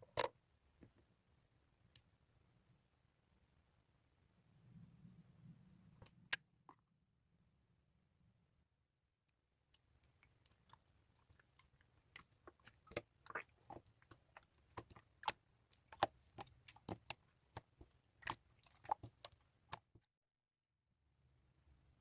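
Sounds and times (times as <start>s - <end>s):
faint irregular clicks and taps: 0.0s - 1.2s, 9.7s - 20.1s.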